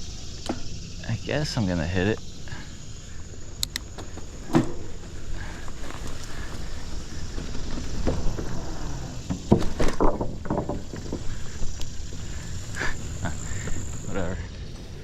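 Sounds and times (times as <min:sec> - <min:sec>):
bike tyres rumbling on dirt: 0:01.4 - 0:15.0
bike knocking and rattling: 0:03.5 - 0:15.0.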